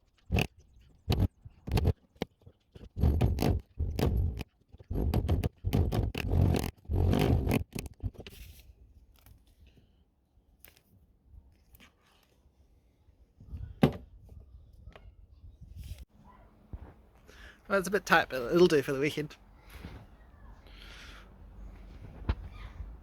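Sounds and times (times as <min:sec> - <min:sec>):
leather strap scraping and rubbing: 0:00.0 - 0:09.3.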